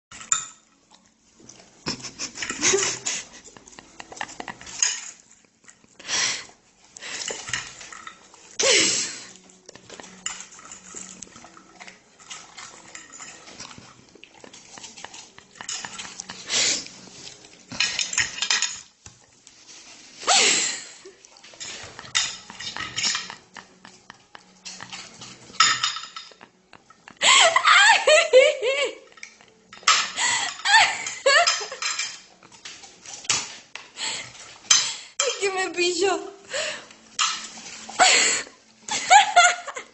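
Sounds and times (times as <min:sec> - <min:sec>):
clattering and clinking: 0:01.9 - 0:05.9, 0:09.7 - 0:16.4, 0:17.7 - 0:19.0, 0:21.5 - 0:27.0, 0:37.2 - 0:37.8.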